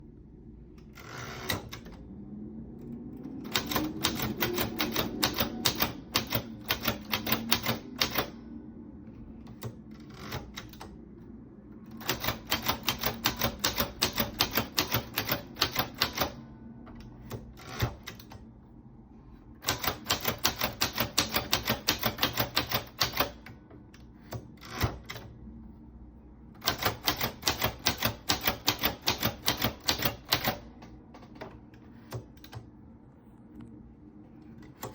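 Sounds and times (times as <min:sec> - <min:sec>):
typewriter keys striking: 0:03.4 - 0:08.4, 0:12.0 - 0:16.4, 0:19.6 - 0:23.5, 0:26.6 - 0:32.6.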